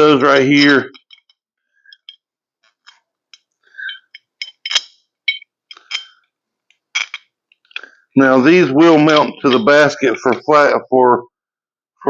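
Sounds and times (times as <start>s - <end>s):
metal bolts clicking and clinking: 0.6s - 2.2s, 2.8s - 6.2s, 6.9s - 7.9s, 8.9s - 10.4s.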